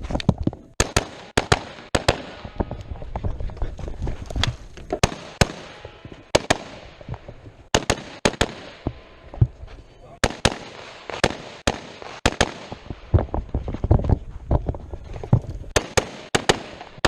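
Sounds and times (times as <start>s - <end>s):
rifle shots: 0.8s - 2.7s, 5.0s - 7.0s, 7.7s - 9.0s, 10.2s - 13.1s, 15.7s - 17.0s.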